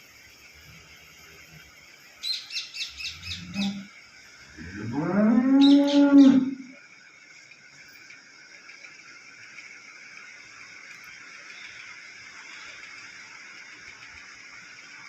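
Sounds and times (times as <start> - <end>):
bird chirping: 2.2 - 3.9, 5.4 - 6.7
cow mooing: 3.3 - 3.9, 4.6 - 6.7.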